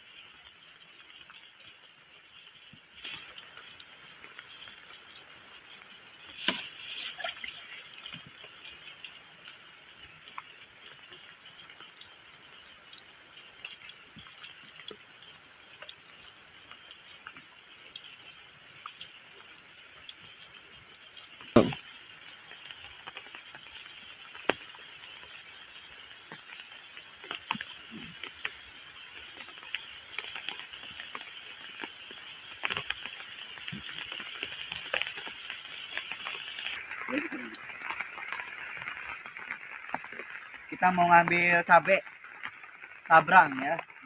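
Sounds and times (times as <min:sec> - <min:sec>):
high-pitched insect drone: 0:00.0 - 0:44.0
water dripping and splashing: 0:00.0 - 0:44.0
sharp knock: 0:21.6 - 0:21.8.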